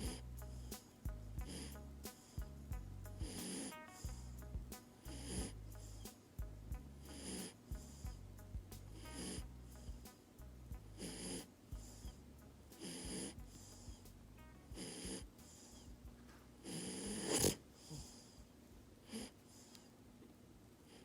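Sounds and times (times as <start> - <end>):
dog snoring: 0.0 - 0.7, 1.4 - 2.3, 3.2 - 3.8, 5.0 - 6.0, 7.1 - 8.2, 8.9 - 10.0, 10.9 - 12.2, 12.8 - 14.0, 14.7 - 15.9, 16.6 - 18.4, 19.0 - 19.9.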